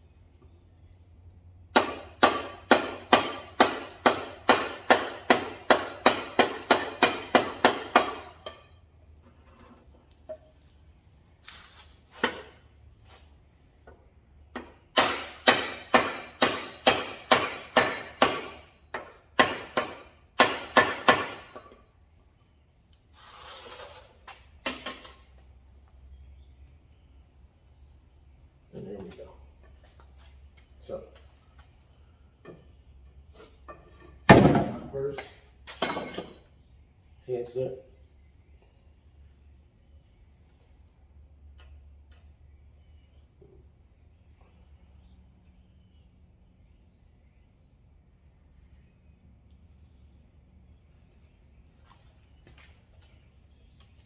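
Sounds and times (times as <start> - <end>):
tomahawk striking wood block: 1.7 - 8.5, 14.6 - 21.7.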